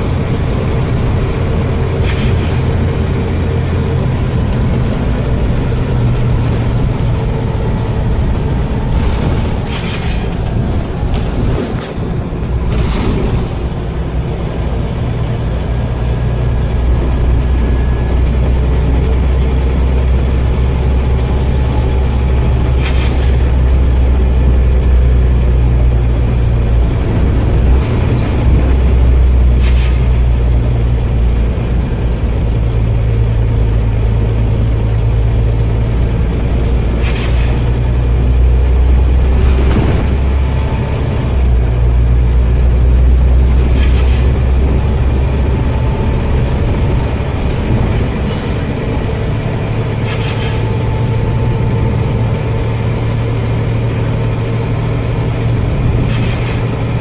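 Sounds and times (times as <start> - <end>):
bus engine drone: 0.0 - 57.0
compressed air hiss: 50.1 - 50.7.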